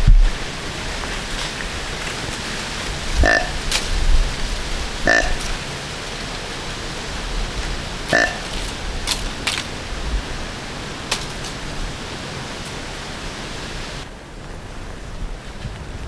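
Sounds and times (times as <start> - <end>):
wind through woods: 0.0 - 16.0
short sharp crackles: 8.1 - 12.0.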